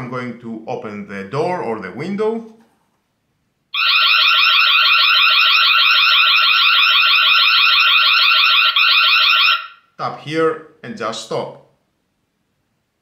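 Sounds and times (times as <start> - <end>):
warbling electronic alarm siren: 3.7 - 9.9.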